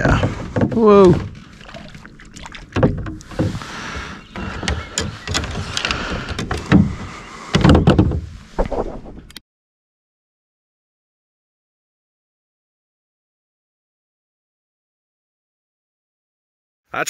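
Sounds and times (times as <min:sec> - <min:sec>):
knocks and thumps in a kayak: 0:00.0 - 0:08.8
kayak hull creaking: 0:00.0 - 0:09.3.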